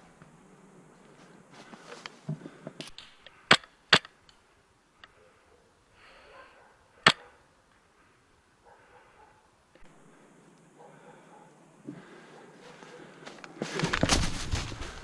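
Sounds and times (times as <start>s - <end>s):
gear rustling: 13.4s - 15.0s.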